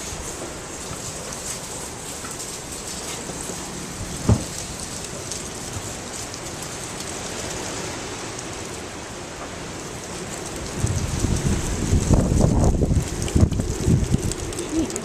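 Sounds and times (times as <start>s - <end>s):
gust thumping microphone: 3.9s - 4.8s
strong wind rushing: 10.7s - 14.5s.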